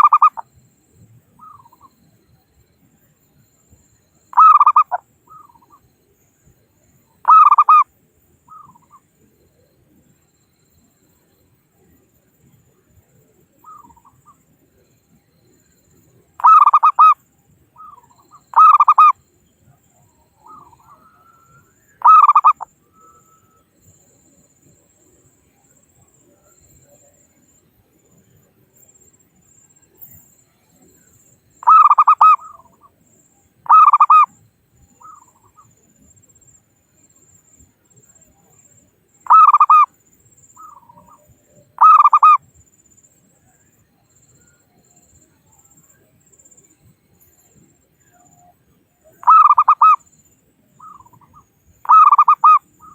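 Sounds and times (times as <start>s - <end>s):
dove cooing: 4.4s - 5.7s, 20.4s - 23.3s, 31.6s - 32.9s, 33.7s - 34.3s, 39.3s - 39.9s, 41.8s - 42.4s, 49.2s - 50.0s, 50.8s - 52.9s.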